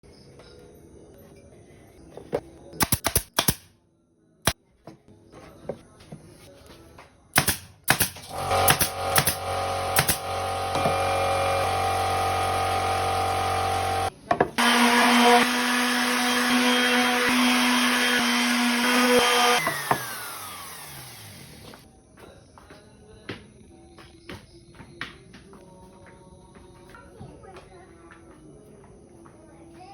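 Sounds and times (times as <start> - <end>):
electric power tool motor: 8.3 - 21.8.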